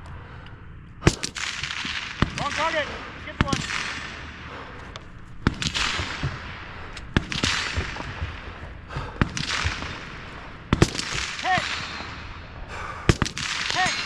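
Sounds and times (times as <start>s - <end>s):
gunshots hitting steel targets: 1.0s - 4.7s, 5.4s - 14.0s.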